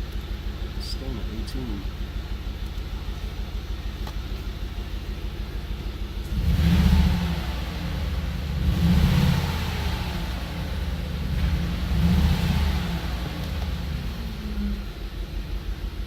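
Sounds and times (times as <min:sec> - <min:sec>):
car engine revving: 0:05.3 - 0:16.0.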